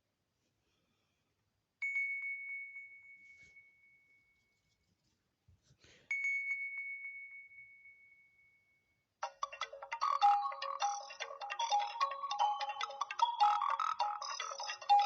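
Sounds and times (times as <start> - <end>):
high ding: 1.8 - 4.3, 6.1 - 8.8
melodic ringtone: 9.2 - 15.0.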